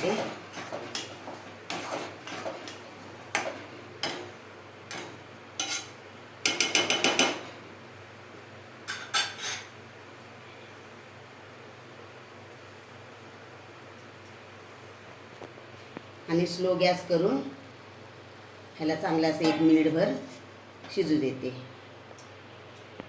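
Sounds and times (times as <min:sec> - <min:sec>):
metal spoon stirring in pot: 0:00.0 - 0:07.4.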